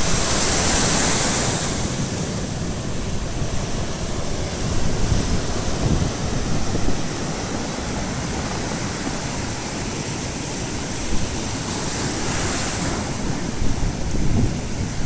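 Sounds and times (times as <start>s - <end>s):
surf washing onto shore: 0.0s - 15.0s
wave surging: 0.0s - 15.0s
wind buffeting microphone: 0.0s - 15.0s.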